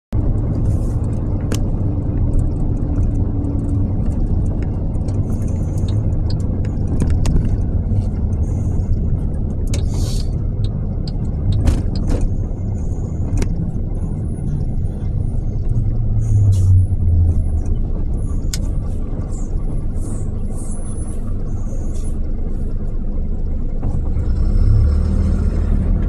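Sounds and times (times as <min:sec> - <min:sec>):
low rumble of moving car: 0:00.1 - 0:26.0
faint clicks and ticks: 0:00.2 - 0:12.4.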